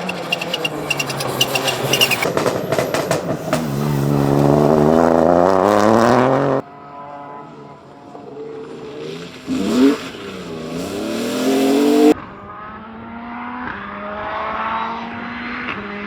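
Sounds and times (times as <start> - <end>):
engine crackles: 0.0 - 12.2
rally car engine accelerating: 0.0 - 16.0.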